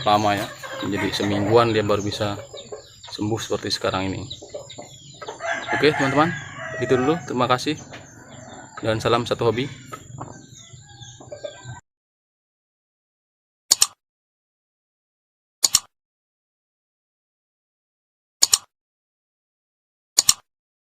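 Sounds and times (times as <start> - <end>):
sharp double click: 13.7 - 14.0, 15.6 - 15.9, 18.4 - 18.7, 20.2 - 20.5.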